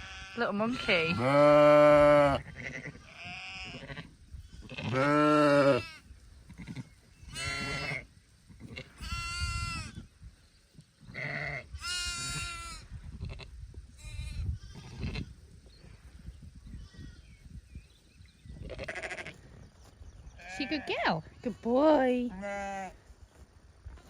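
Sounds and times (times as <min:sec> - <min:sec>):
sheep and lambs bleating: 0:00.0 - 0:10.0, 0:11.1 - 0:15.4, 0:16.7 - 0:17.4, 0:18.5 - 0:19.5, 0:20.4 - 0:23.0.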